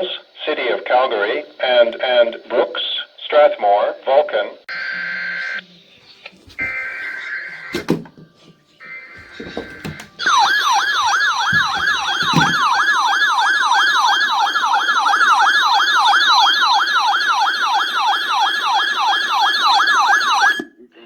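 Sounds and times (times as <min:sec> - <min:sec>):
weather radio alert siren warbling: 0:08.8 - 0:20.8.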